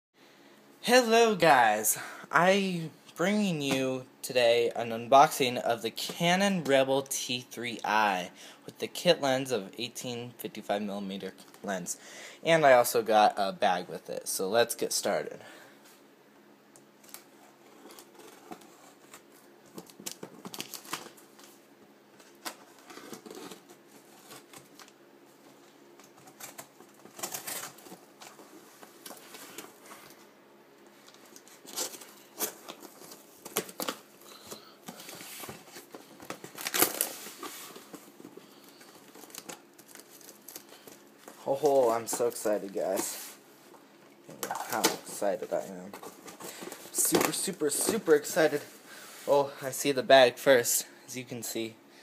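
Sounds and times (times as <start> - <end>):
faint steady hum: 0.2 - 52.0
packaging crinkling and tearing: 17.8 - 21.6, 26.0 - 30.2, 31.0 - 43.2.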